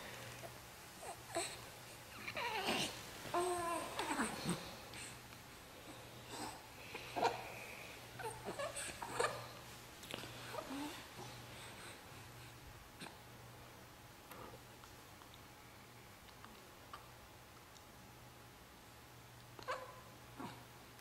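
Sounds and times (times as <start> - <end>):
low steady hum: 0.0 - 21.0
baby whimpering cries: 2.2 - 4.7.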